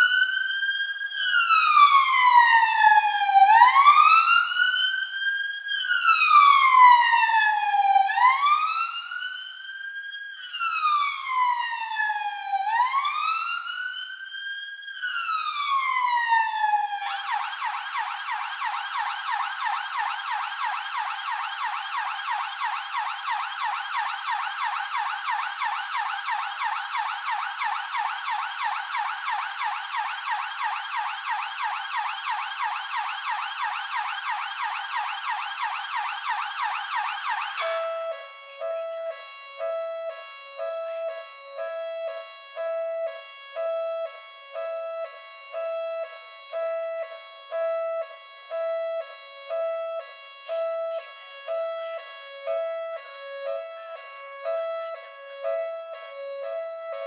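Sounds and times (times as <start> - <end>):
police siren wailing and yelping: 0.0 - 14.2, 14.8 - 38.1.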